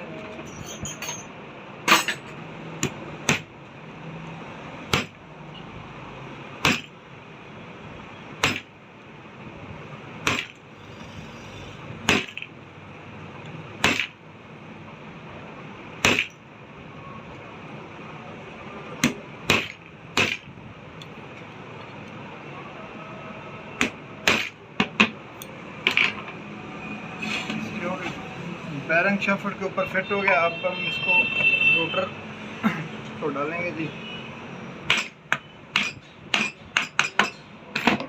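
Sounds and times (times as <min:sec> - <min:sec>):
hammer tapping on metal: 0:34.9 - 0:38.0.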